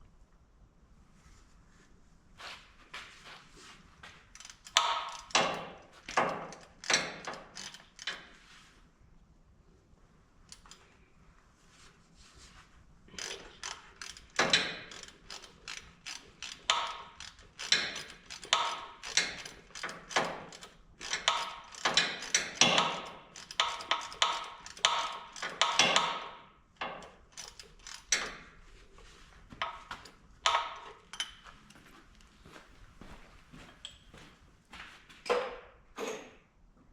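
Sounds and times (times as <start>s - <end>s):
rapid ratcheting clicks: 4.3s - 8.4s, 10.5s - 10.9s, 13.1s - 28.5s.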